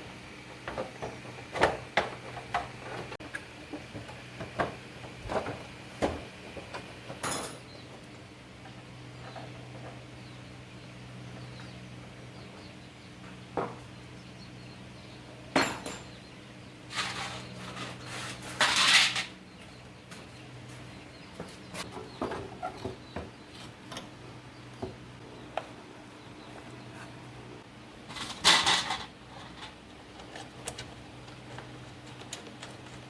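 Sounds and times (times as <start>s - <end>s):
metal tools clinking: 7.2s - 7.7s, 15.6s - 16.2s
rattling scrape: 16.9s - 19.3s.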